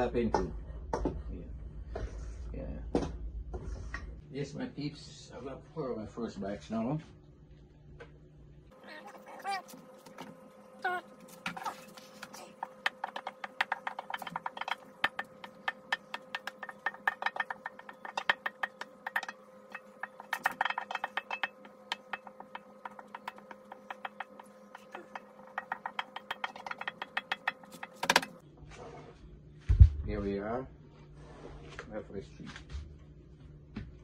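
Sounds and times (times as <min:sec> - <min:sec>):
utensil scraping a bowl: 0:11.2 - 0:29.2.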